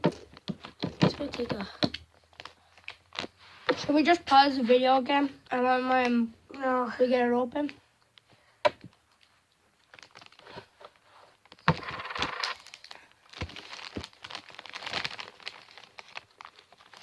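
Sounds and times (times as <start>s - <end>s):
scraping and crinkling: 0.0s - 4.2s, 9.1s - 17.0s.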